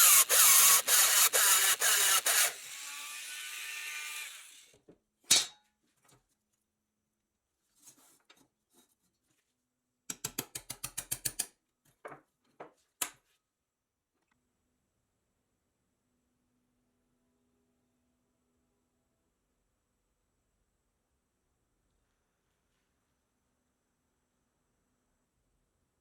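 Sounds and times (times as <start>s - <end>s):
power tool running: 0.0s - 4.7s.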